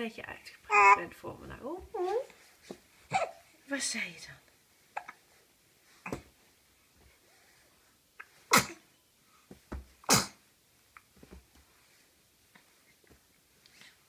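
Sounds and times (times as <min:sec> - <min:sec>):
baby sneezing: 0:03.1 - 0:03.4, 0:08.5 - 0:08.9, 0:10.0 - 0:10.4.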